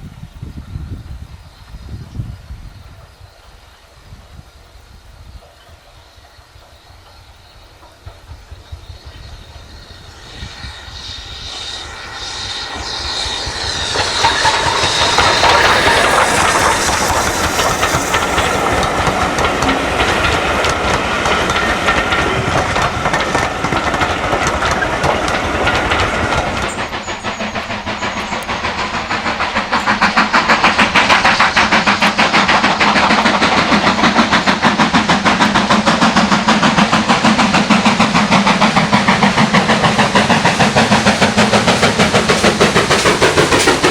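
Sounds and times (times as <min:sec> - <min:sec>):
steam hiss: 0:00.0 - 0:43.9
steam locomotive working: 0:00.0 - 0:43.9
fast rhythmic locomotive beat: 0:07.8 - 0:43.9
wheels clattering: 0:13.9 - 0:43.9.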